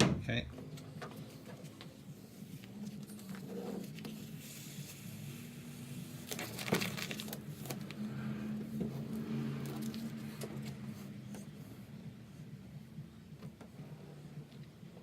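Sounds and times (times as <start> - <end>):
squeegee rubbing on vinyl: 1.2 - 11.6
steady low hum: 7.3 - 15.0.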